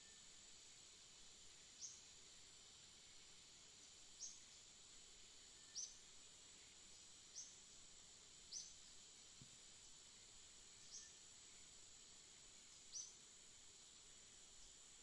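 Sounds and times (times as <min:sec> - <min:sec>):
high insect drone: 0:00.0 - 0:15.0
faint bird chirping: 0:01.7 - 0:02.2, 0:03.8 - 0:04.7, 0:05.5 - 0:07.7, 0:08.4 - 0:09.0, 0:09.8 - 0:13.3.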